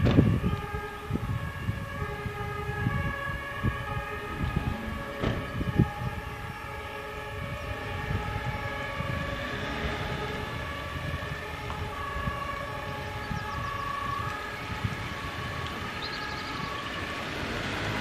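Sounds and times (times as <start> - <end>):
alarm siren chord: 0.4 - 17.0
low rough rumble: 2.8 - 12.4.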